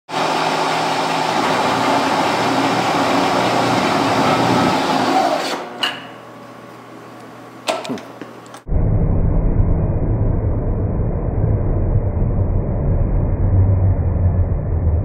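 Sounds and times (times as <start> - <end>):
milling machine running: 0.1 - 6.2.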